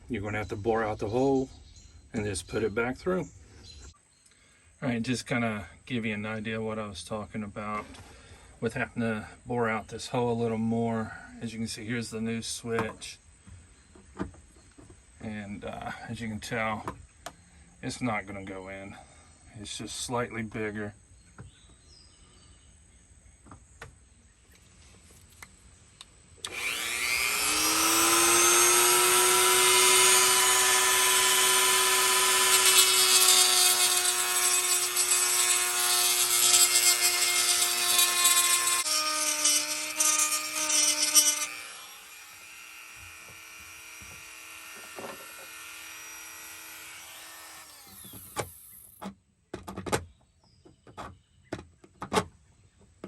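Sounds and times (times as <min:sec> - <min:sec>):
rotary tool whining and grinding: 0:26.4 - 0:49.0.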